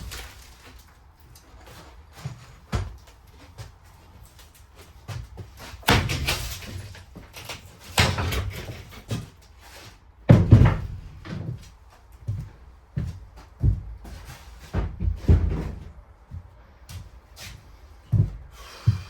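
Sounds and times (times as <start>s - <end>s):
rattling scrape of boards: 5.6s - 11.0s
wooden boards banging: 5.7s - 9.4s, 10.3s - 11.6s.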